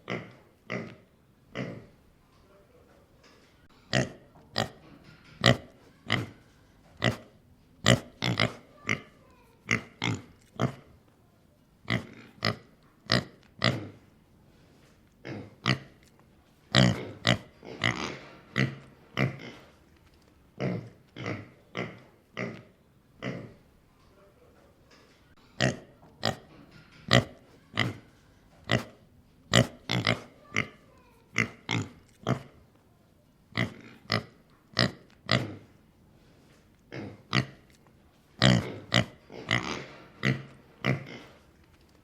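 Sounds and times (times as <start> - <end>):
pig grunting: 0.0 - 2.0, 7.0 - 10.9, 15.2 - 15.9, 16.7 - 19.7, 20.6 - 23.6, 28.7 - 32.6, 38.4 - 41.4.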